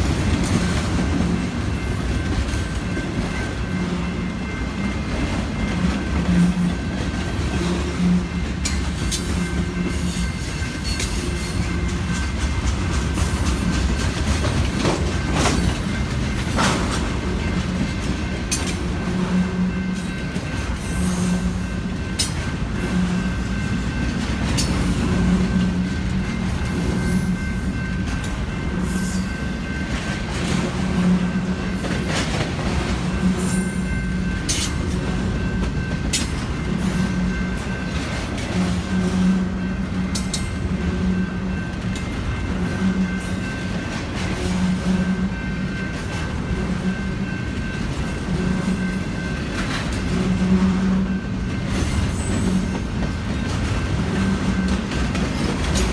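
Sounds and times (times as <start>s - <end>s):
train cars rumbling past: 0.0s - 55.9s
wheels clicking over rail joints: 8.4s - 19.1s, 31.6s - 36.9s, 51.4s - 55.9s.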